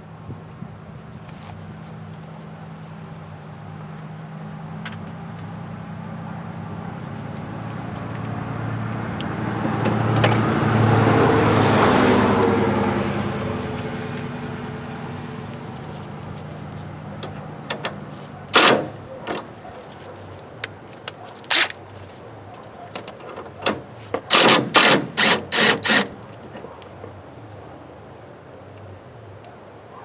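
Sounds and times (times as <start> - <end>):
light metallic clinks: 4.8 - 5.2, 10.2 - 10.9
car passing by: 5.4 - 17.1.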